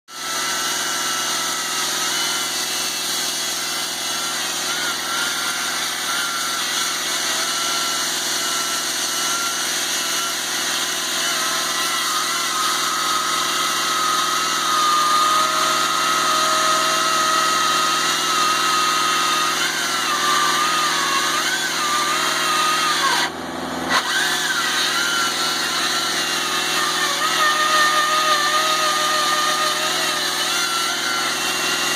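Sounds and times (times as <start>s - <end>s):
chainsaw engine running: 8.0s - 31.9s.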